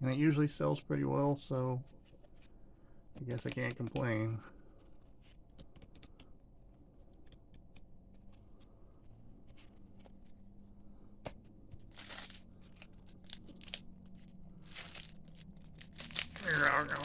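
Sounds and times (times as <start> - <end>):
cards clicking and rustling: 11.3 - 17.0
pack wrapper tearing: 11.8 - 17.0.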